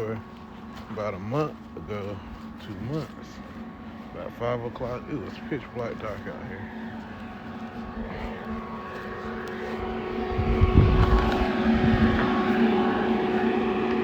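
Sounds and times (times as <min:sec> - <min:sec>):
heater whirring hum: 0:00.0 - 0:14.0
low rumble: 0:02.4 - 0:14.0.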